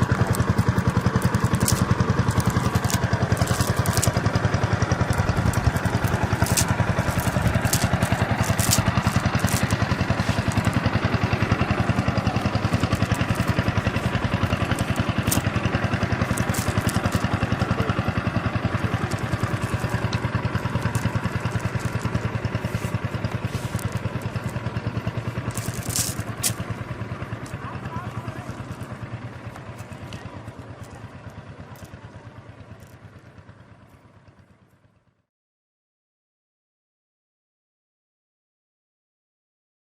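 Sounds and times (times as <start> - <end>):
small engine chugging: 0.0 - 35.2.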